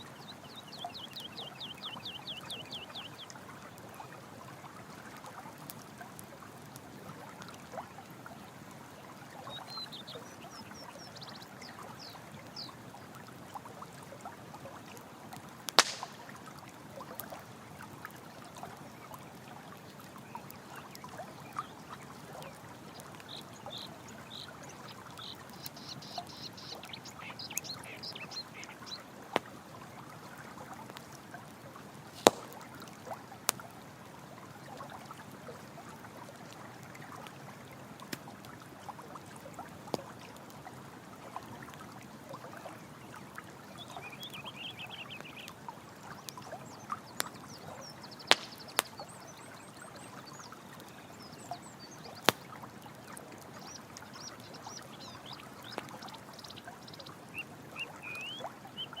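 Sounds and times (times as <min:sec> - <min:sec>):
campfire crackling: 0:00.0 - 0:58.4
running water: 0:00.0 - 0:59.0
burning wood popping: 0:15.4 - 0:16.4, 0:32.0 - 0:33.6, 0:48.2 - 0:49.0, 0:52.2 - 0:52.5.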